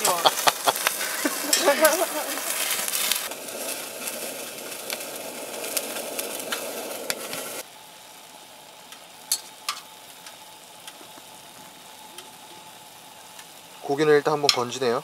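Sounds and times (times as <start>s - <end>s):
meat sizzling in a pot: 0.0s - 15.0s.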